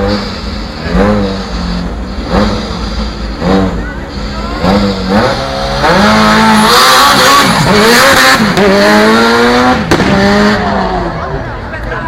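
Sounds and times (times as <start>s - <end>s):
car engine revving: 0.0s - 12.0s
sharp crack: 9.7s - 10.4s.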